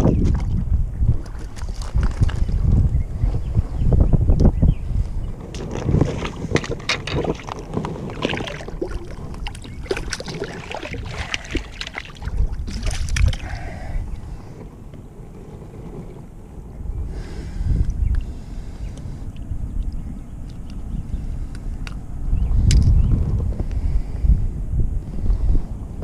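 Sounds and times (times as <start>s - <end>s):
wind buffeting microphone: 0.0s - 26.0s
water splashing and knocking: 5.6s - 13.5s.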